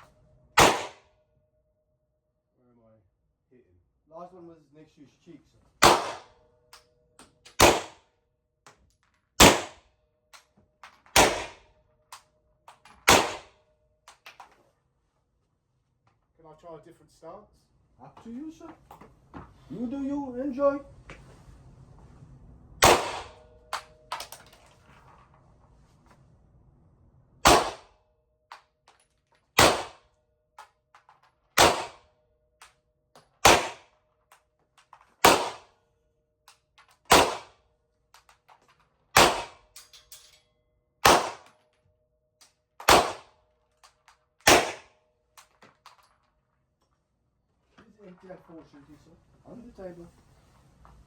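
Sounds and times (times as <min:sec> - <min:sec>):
pistol shots with echo: 0:00.6 - 0:01.1, 0:05.8 - 0:06.4, 0:07.5 - 0:08.0, 0:09.4 - 0:09.8, 0:11.1 - 0:11.7, 0:13.0 - 0:13.6, 0:22.8 - 0:24.4, 0:27.4 - 0:27.9, 0:29.6 - 0:30.0, 0:31.6 - 0:32.1, 0:33.4 - 0:33.9, 0:35.2 - 0:35.7, 0:37.1 - 0:37.6, 0:39.2 - 0:39.8, 0:41.0 - 0:41.5, 0:42.8 - 0:43.3, 0:44.4 - 0:44.9.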